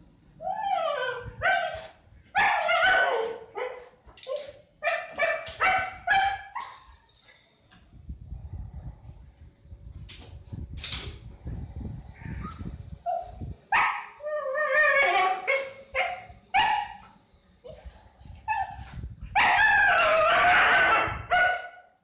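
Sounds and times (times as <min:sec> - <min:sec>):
dog whining cry: 0:00.4 - 0:07.0, 0:12.3 - 0:21.8
dog yelping and barking: 0:00.5 - 0:07.0, 0:12.4 - 0:17.9, 0:18.5 - 0:21.8.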